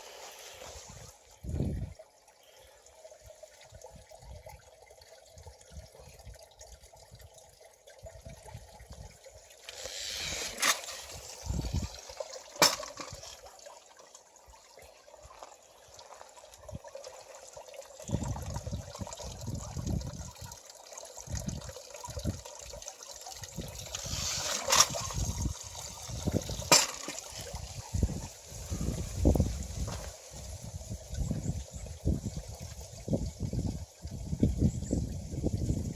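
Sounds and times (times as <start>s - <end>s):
water trickling and splashing: 0.0s - 35.9s
water wheel knocking: 12.6s - 13.3s.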